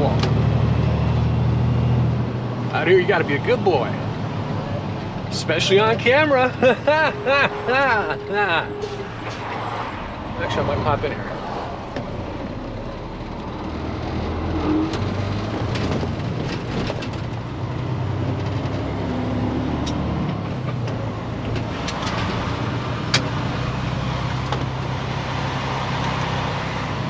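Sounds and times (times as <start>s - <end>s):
diesel truck engine running: 0.0s - 27.0s.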